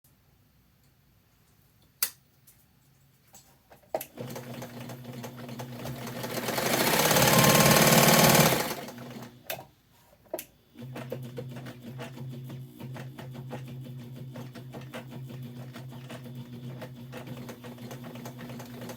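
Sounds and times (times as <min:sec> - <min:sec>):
sewing machine running: 0:04.2 - 0:09.4, 0:10.8 - 0:18.9.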